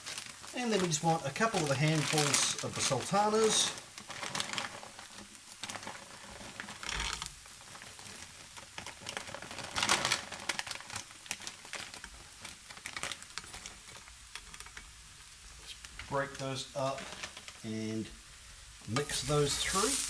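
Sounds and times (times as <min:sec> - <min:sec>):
dried fruit dropped into frying pan: 0:18.9 - 0:20.0.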